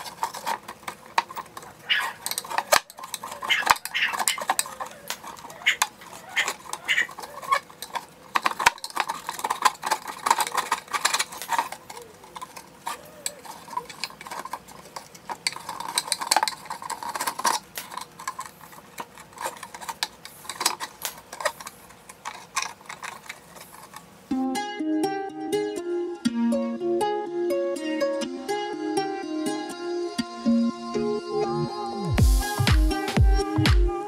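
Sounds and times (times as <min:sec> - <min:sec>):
plucked ukulele-like music: 0:24.3 - 0:34.0.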